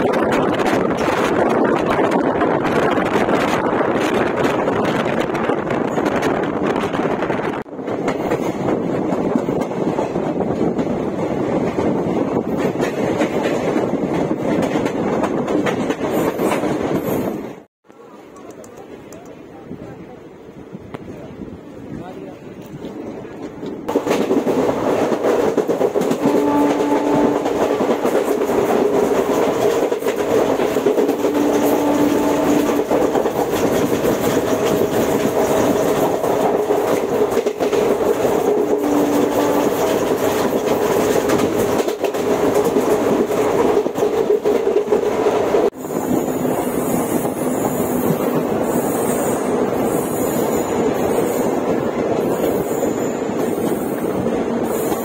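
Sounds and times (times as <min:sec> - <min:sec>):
train rolling at speed: 0:00.0 - 0:55.0
wheels clattering over rails: 0:23.4 - 0:45.8.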